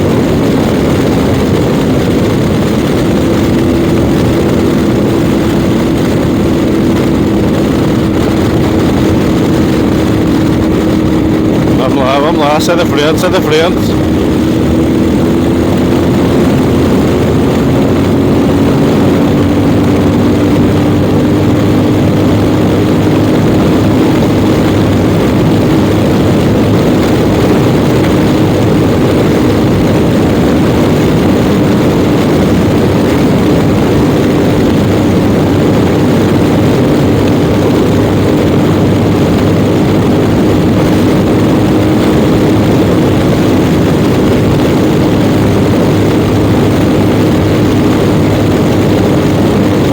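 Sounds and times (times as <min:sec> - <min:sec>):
motorcycle engine cruising: 0:00.0 - 0:49.9
wind rush: 0:00.0 - 0:49.9.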